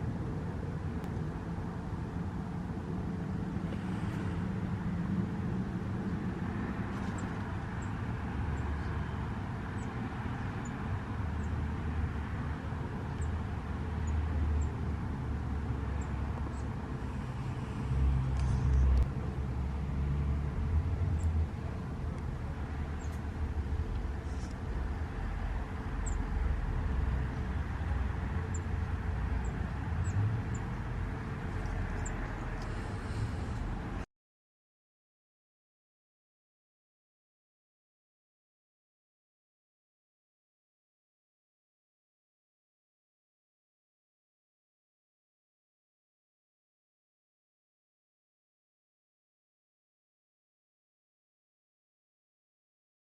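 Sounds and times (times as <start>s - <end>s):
road traffic rumble: 0.0s - 34.1s
vehicle passing: 13.4s - 34.0s
small birds chirping: 16.0s - 16.7s, 22.9s - 23.3s, 29.4s - 30.8s, 31.5s - 33.6s.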